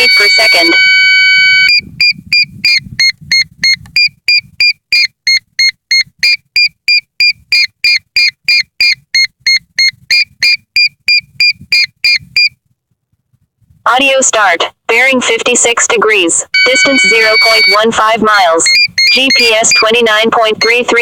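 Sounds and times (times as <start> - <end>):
rapid high-pitched beeps: 16.6 - 17.9, 18.6 - 21.0.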